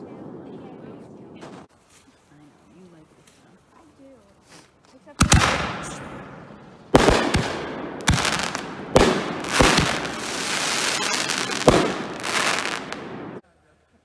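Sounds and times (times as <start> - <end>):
firework bangs with rolling echo: 5.2 - 13.4.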